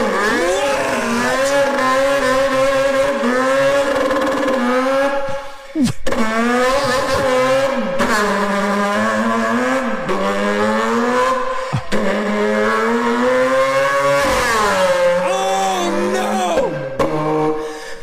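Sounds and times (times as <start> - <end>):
person imitating car engine: 0.2 - 1.6, 5.7 - 7.6, 11.5 - 12.9, 14.9 - 17.1.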